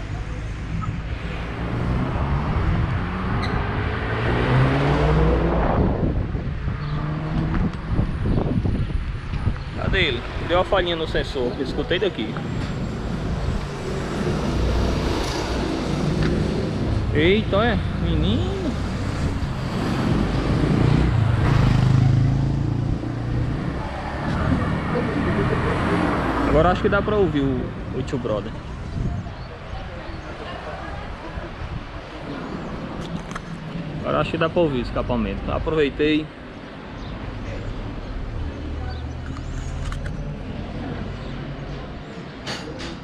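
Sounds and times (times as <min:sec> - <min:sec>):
motorcycle engine accelerating: 0:18.0 - 0:25.8.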